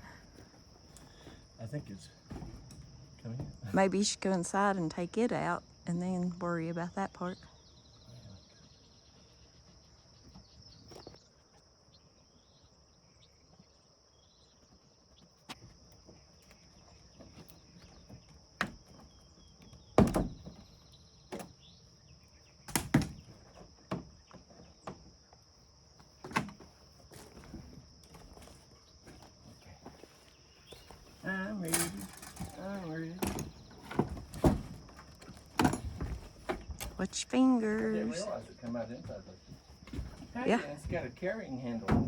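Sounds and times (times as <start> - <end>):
knocks and clunks on camper wall: 0.1 - 4.0, 15.5 - 21.8, 22.6 - 25.3, 26.1 - 30.0, 30.7 - 37.2, 37.8 - 42.0.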